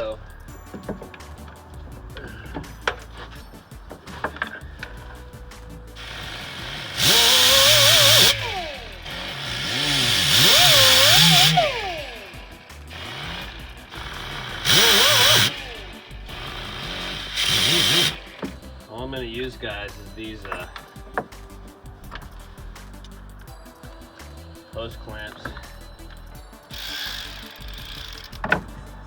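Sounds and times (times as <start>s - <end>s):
power tool motor whine: 5.9s - 18.9s, 25.4s - 29.0s.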